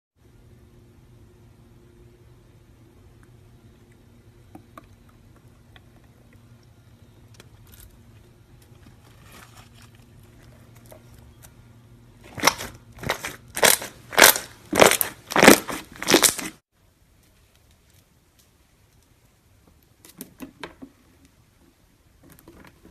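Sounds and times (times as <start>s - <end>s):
low steady hum: 0.2s - 22.9s
slime crackling squishes: 12.2s - 16.6s.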